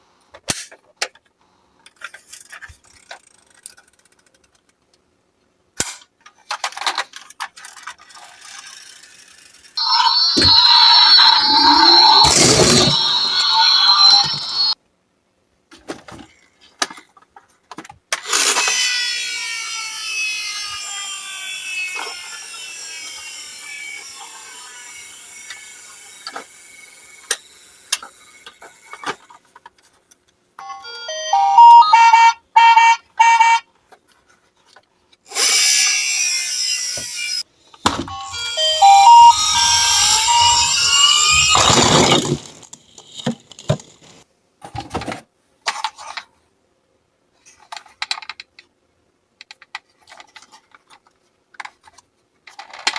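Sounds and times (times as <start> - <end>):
toy cars being handled: 0.3 - 5.1, 5.8 - 9.8, 27.2 - 30.4, 37.8 - 46.4, 47.4 - 48.7, 49.4 - 52.9
toy siren tones: 9.8 - 14.8, 30.6 - 33.6, 38.1 - 43.8.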